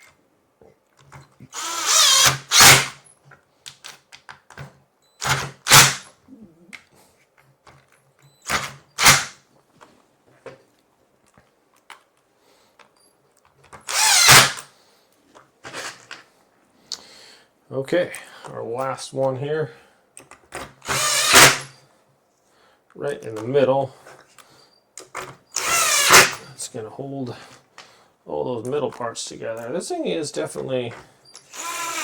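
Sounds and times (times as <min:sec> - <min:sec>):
cordless drill driving screws: 0:01.5 - 0:03.0, 0:05.2 - 0:06.1, 0:08.4 - 0:09.3, 0:13.8 - 0:14.7, 0:20.8 - 0:21.8, 0:25.5 - 0:26.5, 0:31.4 - 0:32.0.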